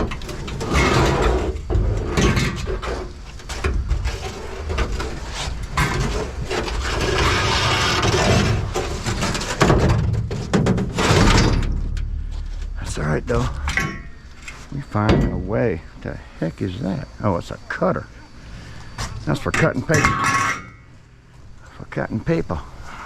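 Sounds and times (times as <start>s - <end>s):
scrap metal clattering: 0.0s - 15.5s, 19.0s - 21.0s
steady low rumble: 8.6s - 20.0s.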